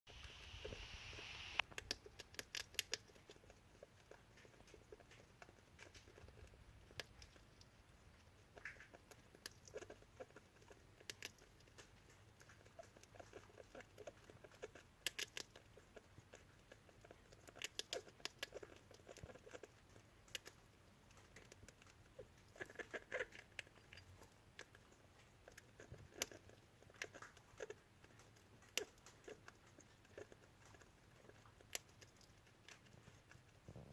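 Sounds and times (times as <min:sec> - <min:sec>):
rodent chewing clicks: 0:00.2 - 0:33.9.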